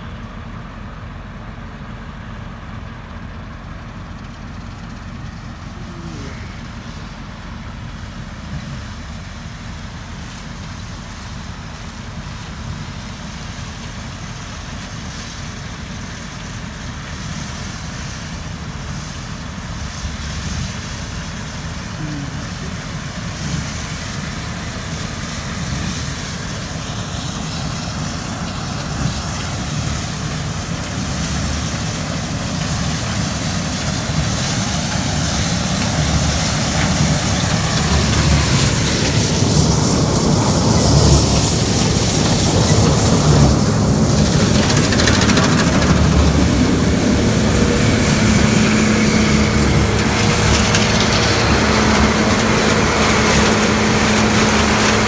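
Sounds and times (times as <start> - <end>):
farm machinery engine rumble: 0.0 - 55.0.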